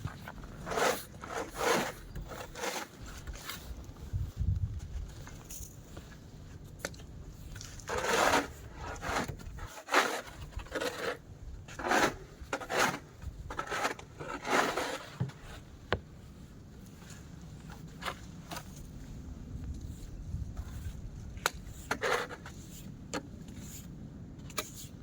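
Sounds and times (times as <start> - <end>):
shovel scraping snow: 0.0 - 3.8, 7.7 - 15.7, 20.0 - 22.9.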